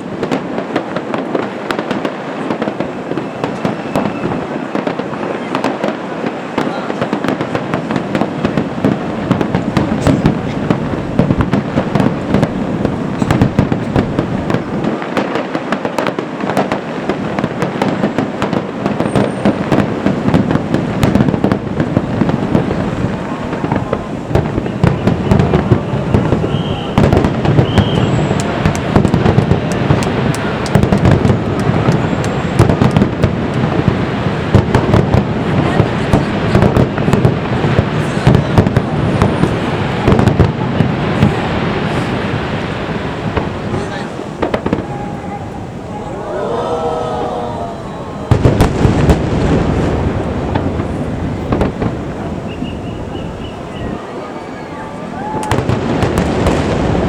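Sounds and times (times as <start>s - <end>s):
fireworks booming and crackling: 0.0s - 57.0s.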